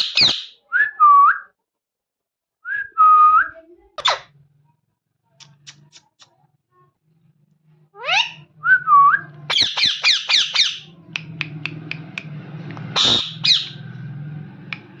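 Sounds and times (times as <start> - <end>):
parrot calling: 0.0 - 0.6, 8.0 - 8.5, 9.5 - 12.1, 12.8 - 13.8.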